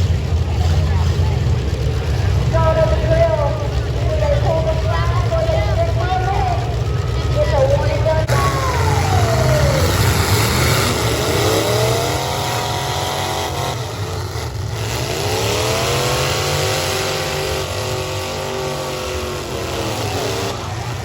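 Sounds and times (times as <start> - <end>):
car engines rumbling and revving: 0.0 - 21.0.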